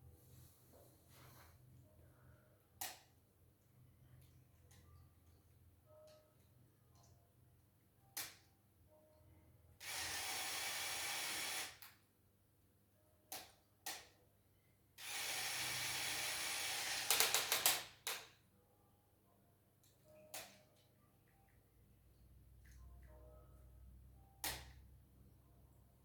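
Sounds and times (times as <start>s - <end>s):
toy gear mechanism running: 9.8s - 11.8s, 15.0s - 17.9s.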